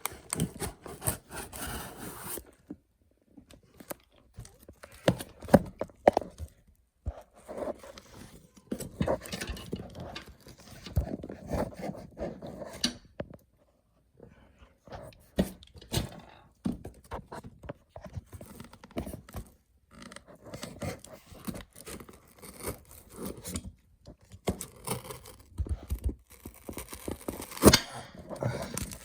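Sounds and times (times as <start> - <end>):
packaging scraping and tearing: 0.0 - 2.6, 20.6 - 23.6, 24.5 - 29.0.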